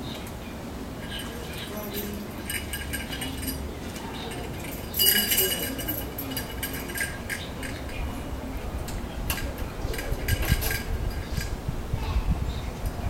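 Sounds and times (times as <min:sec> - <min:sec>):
small hard objects clinking: 0:01.0 - 0:08.0.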